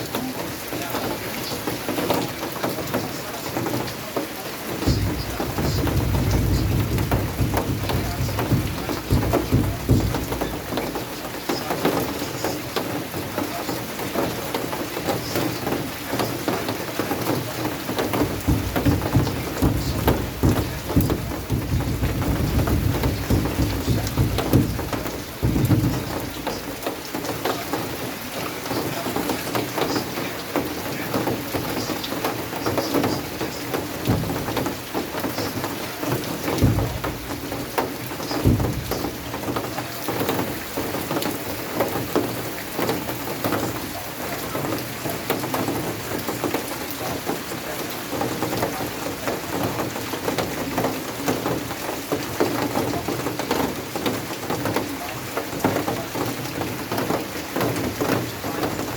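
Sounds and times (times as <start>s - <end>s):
heavy rain falling: 0.0s - 58.9s
low thumps: 4.8s - 12.1s, 17.9s - 27.8s, 33.0s - 43.9s.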